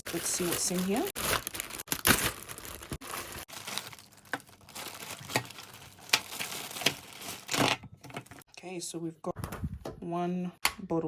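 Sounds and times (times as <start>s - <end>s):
packaging crinkling: 0.0s - 8.4s.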